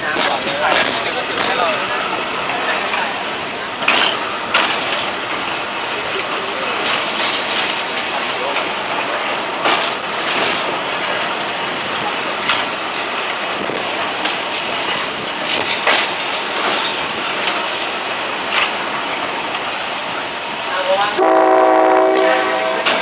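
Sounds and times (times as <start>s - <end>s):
train rolling on track: 0.0s - 23.0s.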